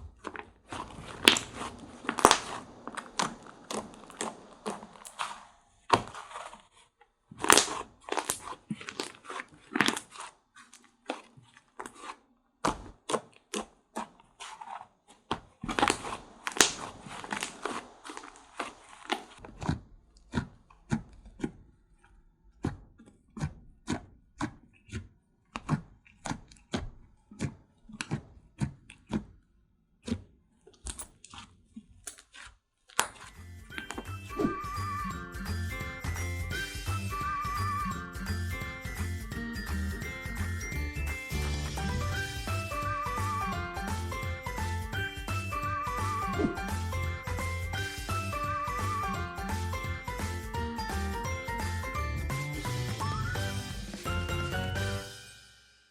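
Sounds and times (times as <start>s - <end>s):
slime squishing pops and clicks: 7.4s - 8.4s.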